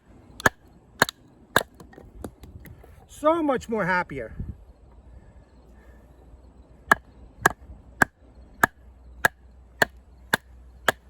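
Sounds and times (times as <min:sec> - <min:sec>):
blade chopping into wood: 0:06.9 - 0:11.0.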